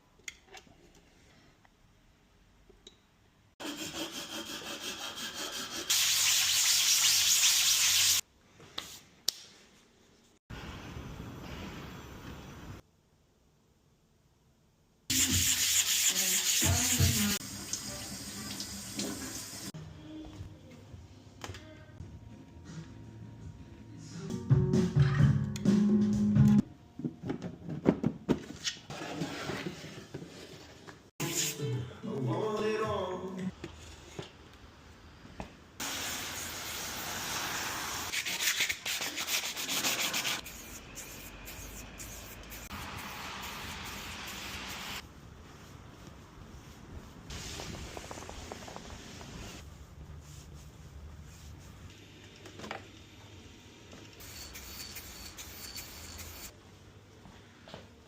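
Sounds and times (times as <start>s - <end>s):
sandpaper rubbing: 3.6s - 8.2s, 15.1s - 17.4s, 38.1s - 45.0s
sanding hiss: 39.3s - 45.0s.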